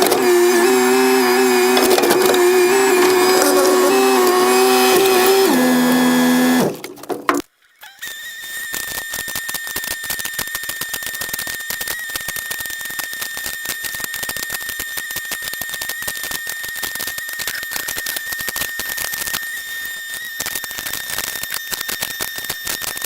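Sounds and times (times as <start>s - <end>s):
heavy machinery rattling: 0.0s - 7.4s.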